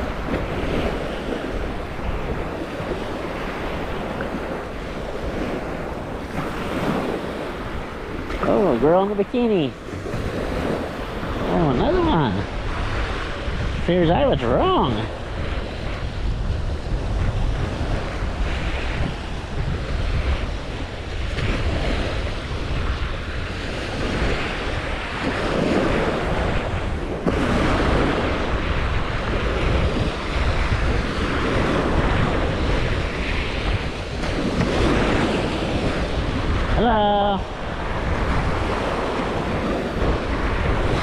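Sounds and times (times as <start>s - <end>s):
surf breaking on beach: 0.0s - 41.0s
wind buffeting microphone: 0.0s - 41.0s.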